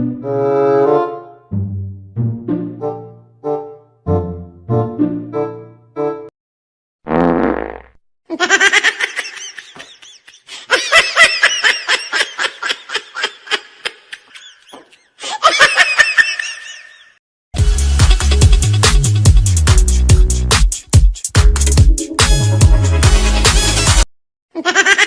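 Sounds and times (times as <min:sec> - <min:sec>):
fake fart noise: 0:07.1 - 0:08.0
loud laughter in bursts: 0:08.3 - 0:17.2, 0:24.6 - 0:25.0.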